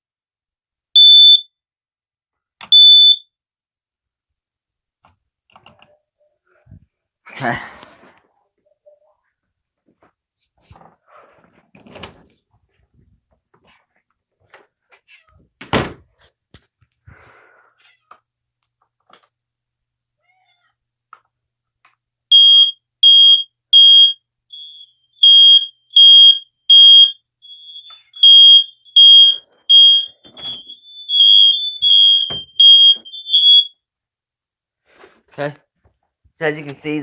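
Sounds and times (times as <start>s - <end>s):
second smoke alarm beeping: 1.0s - 1.5s, 2.6s - 3.3s, 22.3s - 33.8s
smoke alarm shrill beeps: 1.0s - 1.5s, 2.7s - 3.3s, 22.3s - 33.8s.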